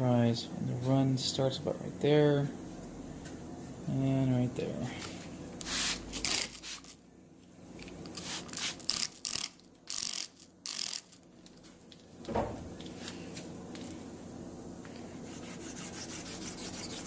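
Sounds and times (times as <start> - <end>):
wet-sanding strokes hissing: 15.2 - 17.0.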